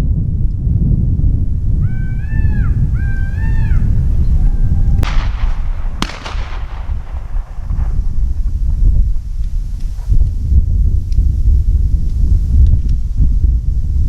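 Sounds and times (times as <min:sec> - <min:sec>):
wind rumble on microphone: 0:00.0 - 0:14.0
animal whistle-like calls: 0:01.6 - 0:06.2
distant shotgun shots: 0:03.2 - 0:09.8.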